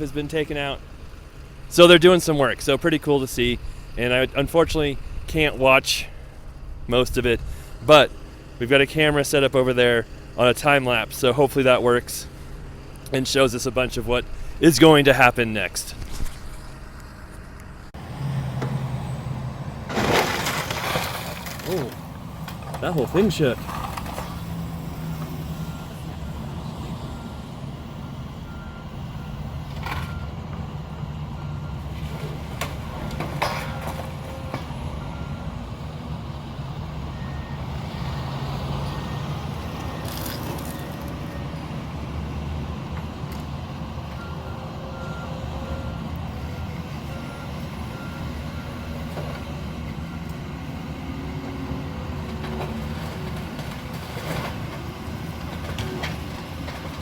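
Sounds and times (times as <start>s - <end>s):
diesel machinery rumbling: 0.0s - 57.0s
sharp cracks of breaking house: 19.9s - 22.0s.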